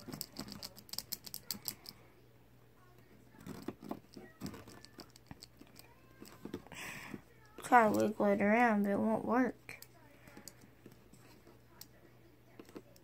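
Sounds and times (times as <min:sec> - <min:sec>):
padlock clicking and rattling: 0:00.0 - 0:01.9.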